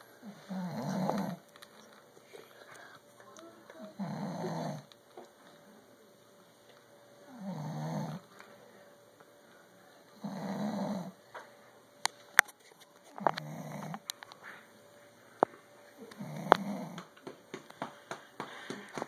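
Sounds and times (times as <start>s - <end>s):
man snoring: 0.2s - 1.4s, 4.0s - 4.9s, 7.3s - 8.2s, 10.2s - 11.2s, 13.4s - 14.0s, 16.2s - 17.0s.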